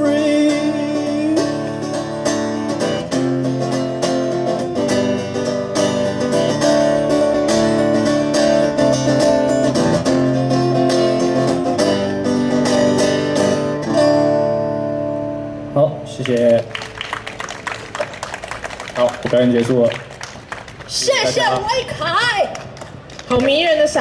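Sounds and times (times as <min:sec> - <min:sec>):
guitar strumming chords: 0:00.0 - 0:16.1.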